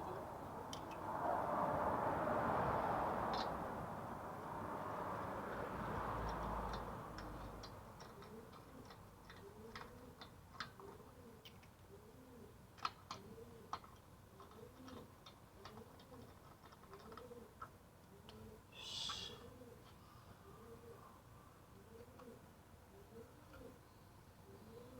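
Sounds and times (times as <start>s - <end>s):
pigeon cooing: 8.0s - 13.8s, 14.4s - 23.8s, 24.5s - 24.9s.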